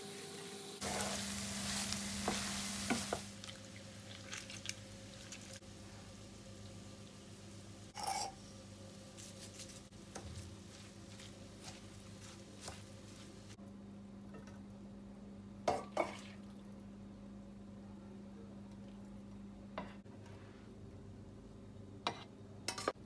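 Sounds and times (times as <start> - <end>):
dishes and cutlery clinking: 8.0 - 8.4.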